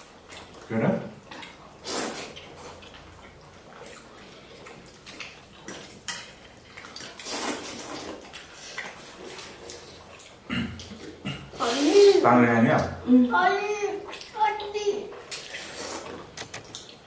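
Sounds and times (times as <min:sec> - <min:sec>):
chewing: 0:00.0 - 0:11.6, 0:14.0 - 0:17.0
slurping noodles and broth: 0:01.7 - 0:04.6, 0:05.7 - 0:12.2, 0:15.3 - 0:16.6.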